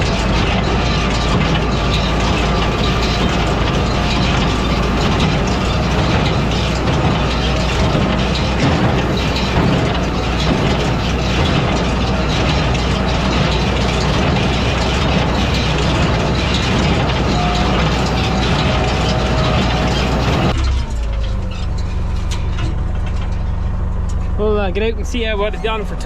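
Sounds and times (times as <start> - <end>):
baler mechanism clattering: 0.0 - 26.0
tractor engine running: 0.0 - 26.0.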